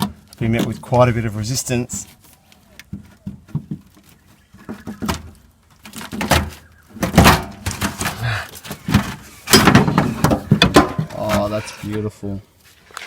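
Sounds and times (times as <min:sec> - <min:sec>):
metal knocks and scraping: 0:02.8 - 0:12.1.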